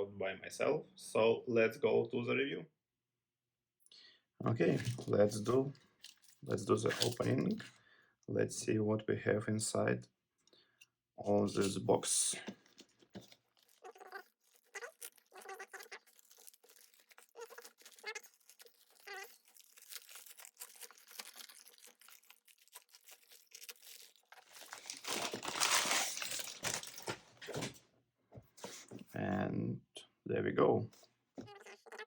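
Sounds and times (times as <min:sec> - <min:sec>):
packaging tearing: 0:06.0 - 0:07.5, 0:12.6 - 0:27.3.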